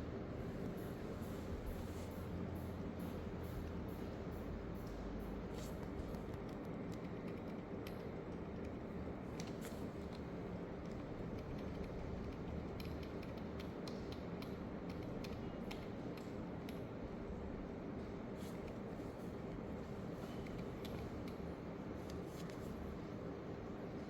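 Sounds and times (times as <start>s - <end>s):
low background hum: 0.0s - 24.0s
faint clicks and ticks: 6.1s - 16.9s.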